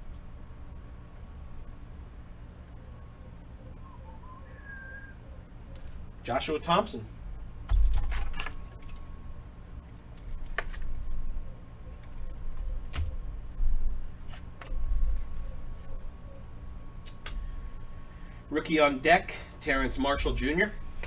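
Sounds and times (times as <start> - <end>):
trading cards and foil packs handled: 9.8 - 13.2.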